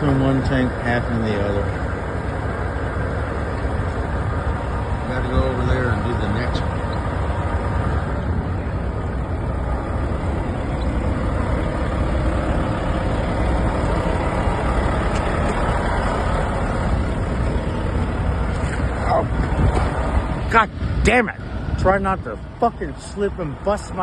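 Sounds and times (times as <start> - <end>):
diesel truck engine idling: 0.0 - 24.0.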